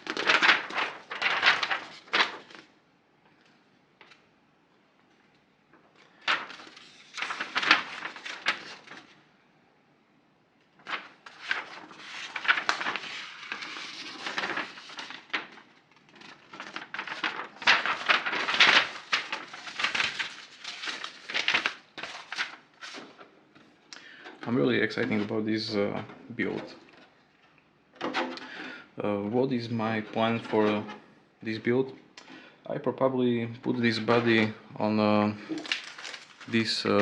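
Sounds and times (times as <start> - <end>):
plastic and paper crinkling: 0.0 - 2.7, 6.0 - 9.2, 10.8 - 27.1, 29.6 - 31.0, 35.2 - 37.0.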